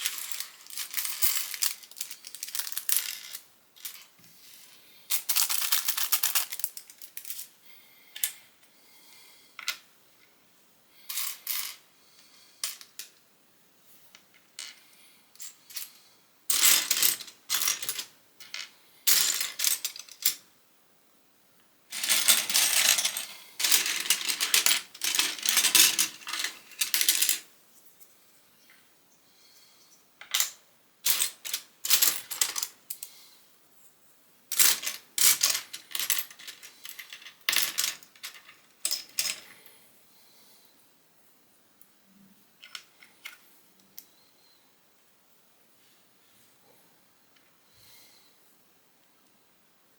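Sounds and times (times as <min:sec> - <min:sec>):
plastic bricks clattering and clicking: 0:00.0 - 0:04.1, 0:05.1 - 0:07.5, 0:21.9 - 0:27.4.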